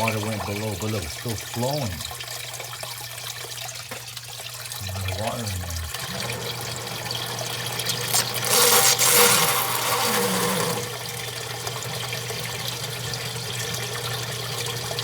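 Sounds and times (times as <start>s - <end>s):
sump pump motor hum: 4.8s - 15.0s
pump slurping air: 8.2s - 11.1s.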